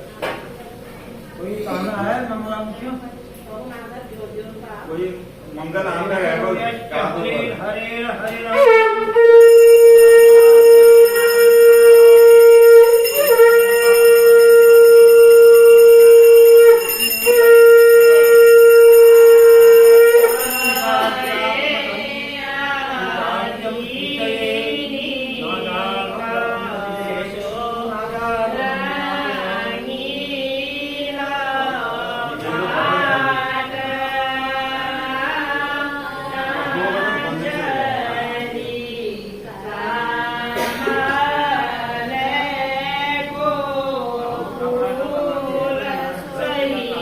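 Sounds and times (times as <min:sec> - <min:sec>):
voices chanting mantras: 0:05.2 - 0:47.0
loud steady held tone: 0:08.6 - 0:22.4.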